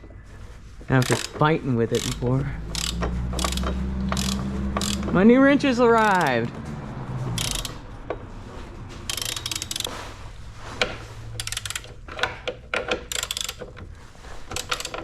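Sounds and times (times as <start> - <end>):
ratchet wrench clicking: 1.0 - 6.5, 7.3 - 8.2, 9.1 - 9.9, 10.8 - 15.0.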